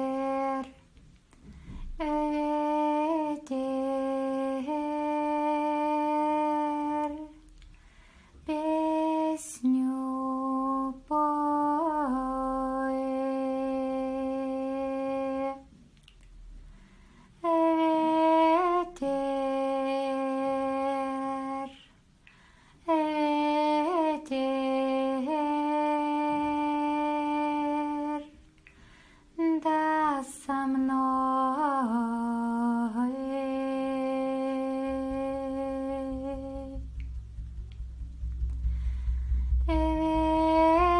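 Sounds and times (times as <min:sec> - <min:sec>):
low beat: 0:34.5 - 0:40.9.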